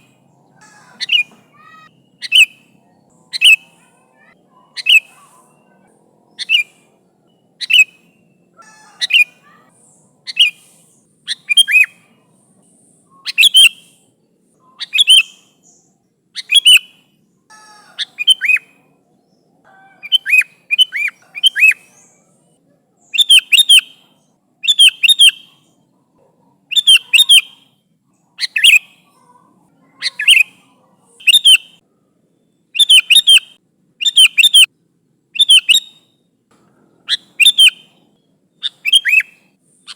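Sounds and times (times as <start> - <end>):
bulbul calling: 0.0 - 18.9, 19.7 - 22.4, 26.7 - 27.8, 29.9 - 31.8, 32.7 - 34.7, 35.4 - 36.2, 37.0 - 39.9.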